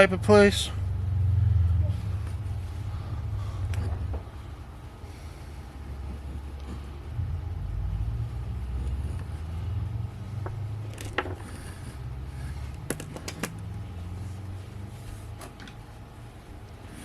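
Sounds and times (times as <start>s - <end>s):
low uneven rumble: 0.0s - 17.0s.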